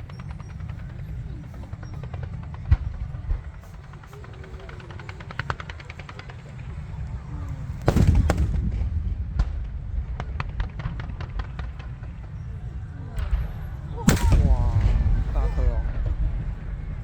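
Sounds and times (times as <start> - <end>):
crowd voices: 0.0 - 17.0
firework booms: 0.0 - 17.0
firework crackling pops: 1.5 - 12.4, 13.2 - 15.4.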